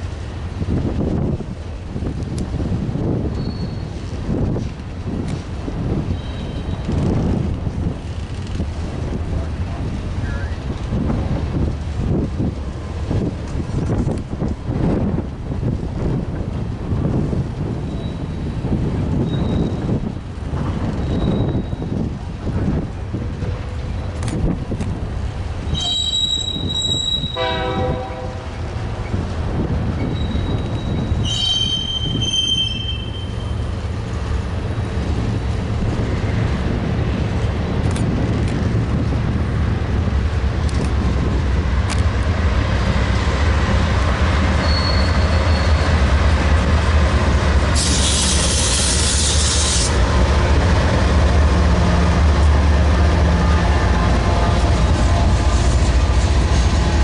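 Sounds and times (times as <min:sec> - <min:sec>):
train rumble: 0:00.0 - 0:57.0
train wheel squeals: 0:03.3 - 0:04.1, 0:06.1 - 0:07.1, 0:17.8 - 0:20.0, 0:20.8 - 0:22.0, 0:25.6 - 0:27.7, 0:29.9 - 0:33.7, 0:44.5 - 0:46.1, 0:47.8 - 0:50.0
train horn note: 0:27.2 - 0:28.6
hiss: 0:47.7 - 0:50.0.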